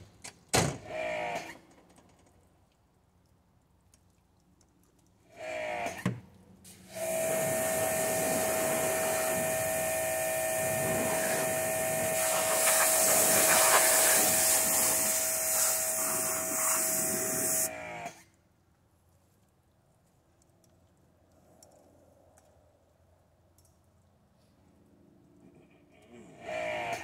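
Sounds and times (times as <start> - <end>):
water jet hissing: 6.7 - 17.7
pressure washer motor whine: 6.8 - 18.1.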